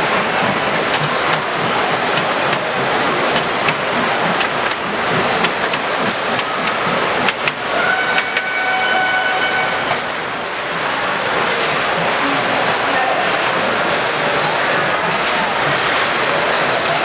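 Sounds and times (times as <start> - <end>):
model locomotive horn: 7.7 - 10.1.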